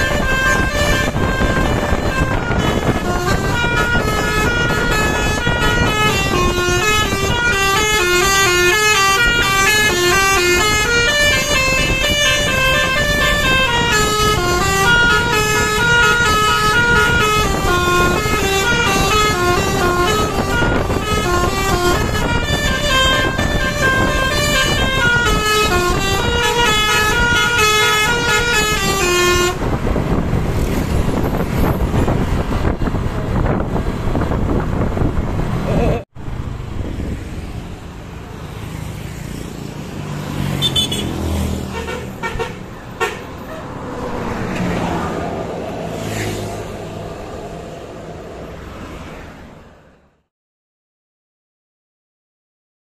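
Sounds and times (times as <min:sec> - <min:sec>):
multi-tone bus horn melody: 0:00.0 - 0:33.0, 0:40.3 - 0:47.5
bus engine and road noise: 0:00.0 - 0:50.3.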